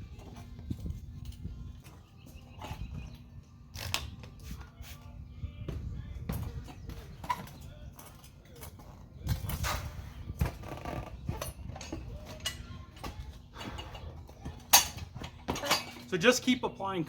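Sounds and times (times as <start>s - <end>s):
metal clanks and knocks: 6.3s - 16.2s
rubber rubbing and creaking: 9.5s - 11.9s.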